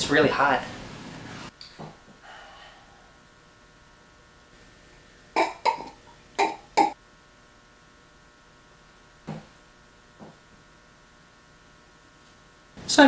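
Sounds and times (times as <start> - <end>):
man coughing: 5.4 - 7.0.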